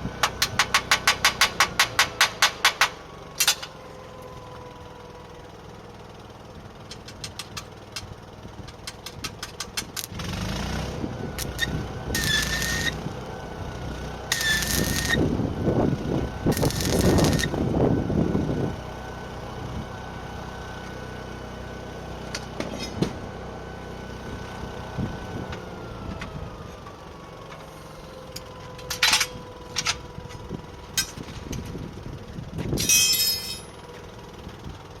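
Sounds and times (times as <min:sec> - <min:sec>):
machine whine: 0:10.0 - 0:18.8.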